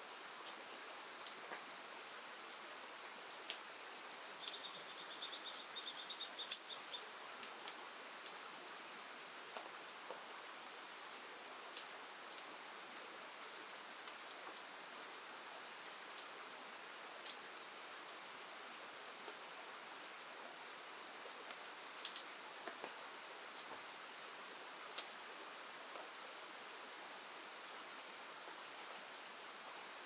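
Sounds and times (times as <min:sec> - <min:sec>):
rain: 0:00.0 - 0:30.0
river water: 0:00.0 - 0:30.0
bird trilling: 0:04.5 - 0:07.0.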